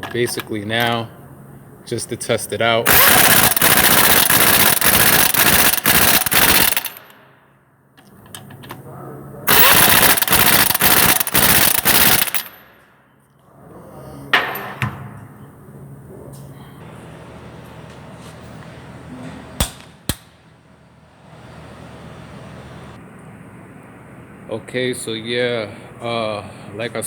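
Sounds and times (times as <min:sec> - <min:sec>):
impact wrench hammering: 0:02.9 - 0:07.2, 0:09.5 - 0:12.7, 0:19.6 - 0:20.4.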